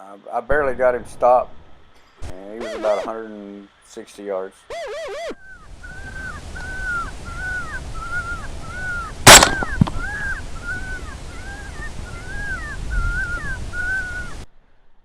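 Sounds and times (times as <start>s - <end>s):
electronic predator call: 2.6s - 3.5s, 4.7s - 5.5s
bullet hitting crack: 9.3s - 10.1s
rifle shot: 9.3s - 10.1s.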